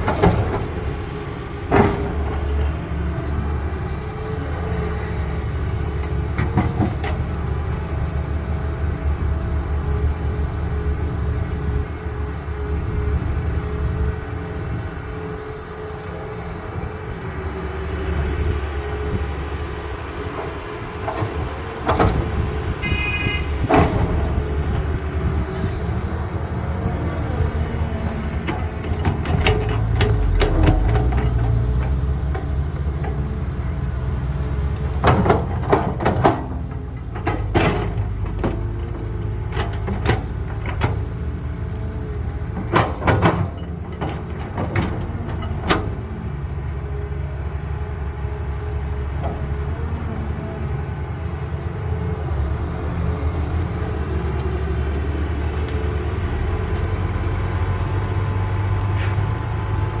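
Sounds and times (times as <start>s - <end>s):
sharp clanks and knocks: 0.0s - 0.9s, 28.5s - 33.2s
excavator diesel engine running: 0.0s - 60.0s.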